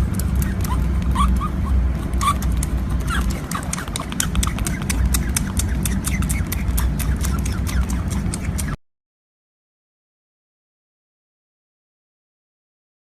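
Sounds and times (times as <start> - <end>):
high animal squeaks: 0.1 - 8.8
sharp clicks: 0.1 - 8.8.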